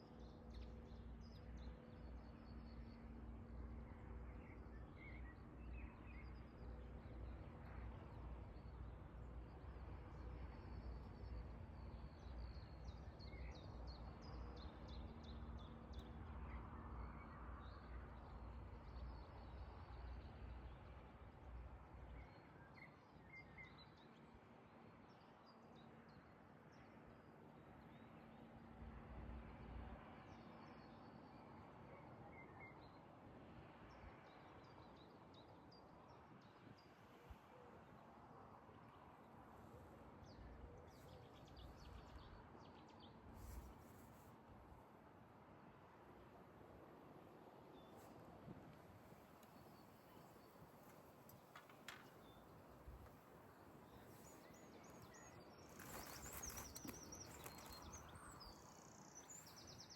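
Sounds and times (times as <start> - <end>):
bird chirps: 53.9 - 59.9.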